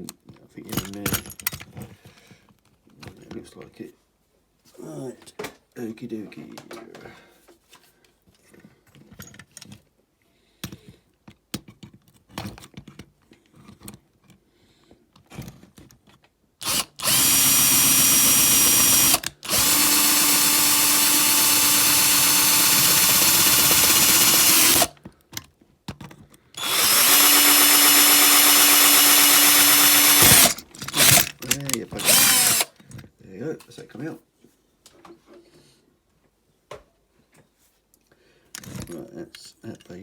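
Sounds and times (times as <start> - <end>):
electric drill boring into metal: 16.6 - 24.9, 26.6 - 32.7.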